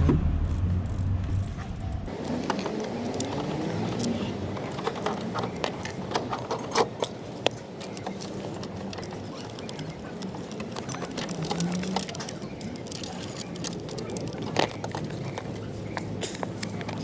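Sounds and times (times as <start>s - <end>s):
low hum: 0.0s - 2.2s
clicks and taps of door parts: 2.2s - 17.0s.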